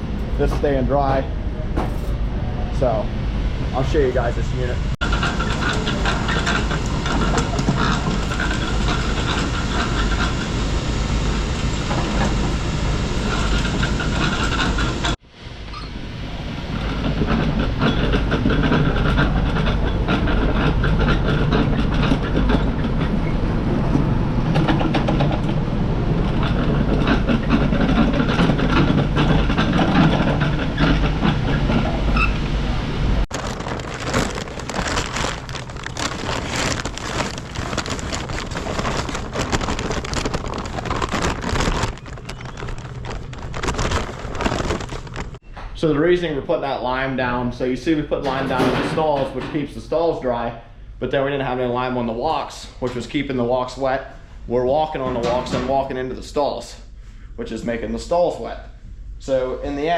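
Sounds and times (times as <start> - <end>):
lime spreader rattle and rumble: 3.8 - 15.2, 16.4 - 45.4, 54.7 - 56.6.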